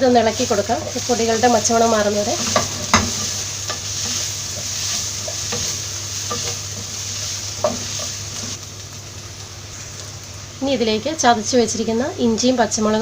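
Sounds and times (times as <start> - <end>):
onions sizzling in a pan: 0.0 - 13.0
spoon knocking against pan: 2.4 - 3.9.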